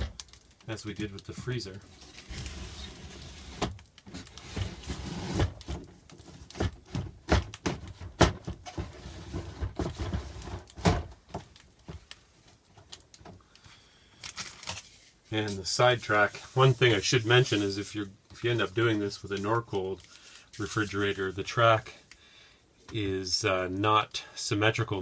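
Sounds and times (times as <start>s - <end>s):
panel scraping along plastic track: 1.9s - 5.7s.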